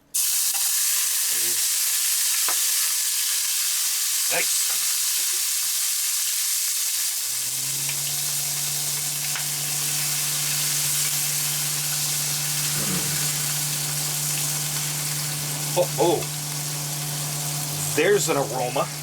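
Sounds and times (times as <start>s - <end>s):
fat sizzling in a frying pan: 0.0s - 19.0s
low steady hum: 7.4s - 19.0s.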